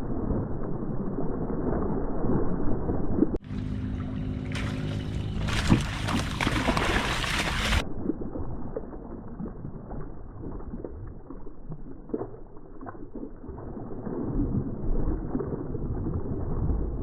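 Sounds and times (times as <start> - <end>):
water noise around kayak: 0.0 - 17.0
faint low hum: 3.4 - 7.8
water splashing: 3.4 - 17.0.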